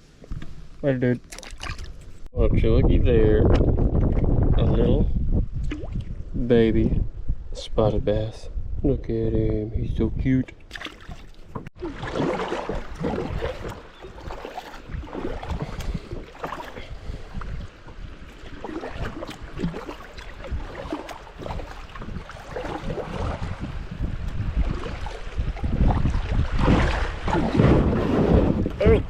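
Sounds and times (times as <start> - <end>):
water splashing around a kayak: 1.2 - 2.3, 10.6 - 29.0
wind rumbling on microphone: 1.6 - 29.0.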